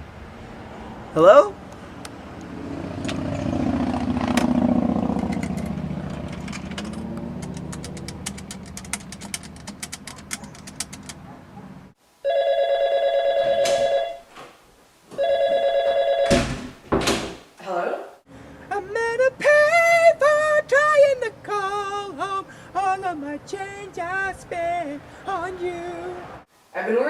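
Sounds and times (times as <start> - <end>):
vehicle passing rumble: 0.0 - 12.0
rapid clicks: 5.4 - 11.2
telephone ringing: 12.2 - 14.3, 15.2 - 16.4.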